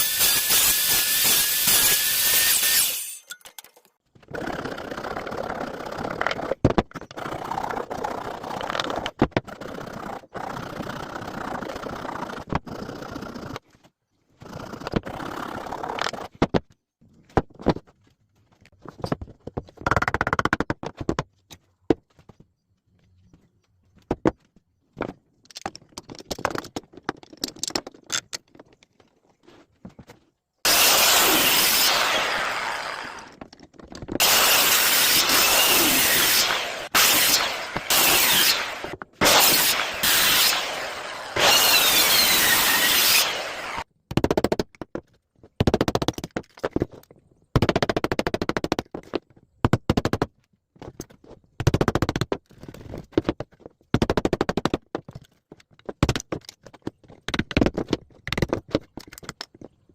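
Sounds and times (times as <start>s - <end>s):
circular saw cutting: 0.0s - 3.4s, 30.7s - 33.4s, 34.2s - 43.8s
wood and tools scraping and knocking: 15.9s - 43.8s, 54.6s - 59.9s.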